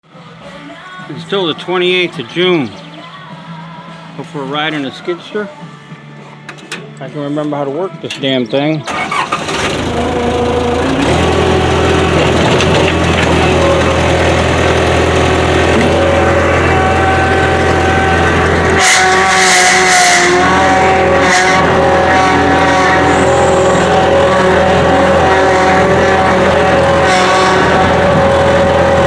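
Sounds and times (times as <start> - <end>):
skid steer engine running: 8.9 - 29.0.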